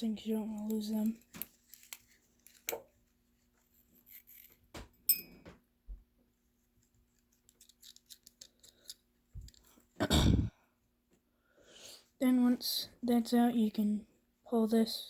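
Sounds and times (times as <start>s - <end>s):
metallic clink: 4.0s - 5.4s
small metal parts clicking: 7.4s - 9.8s.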